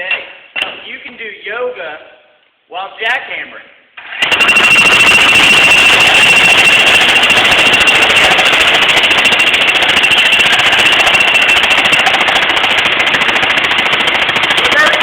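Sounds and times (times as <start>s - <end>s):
jackhammer hammering: 4.0s - 15.0s.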